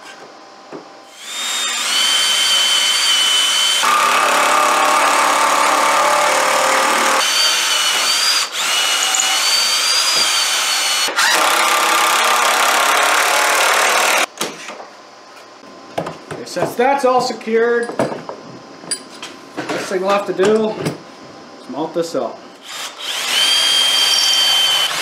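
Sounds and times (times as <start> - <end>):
power drill driving bolts into wood: 1.2 - 14.3.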